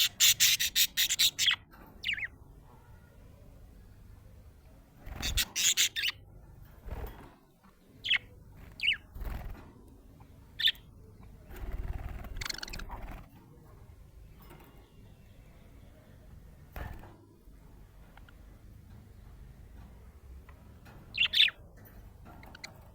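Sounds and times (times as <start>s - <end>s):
budgerigar chirping: 0.0s - 2.3s, 5.2s - 6.2s, 8.0s - 8.2s, 10.6s - 10.8s, 21.1s - 21.6s.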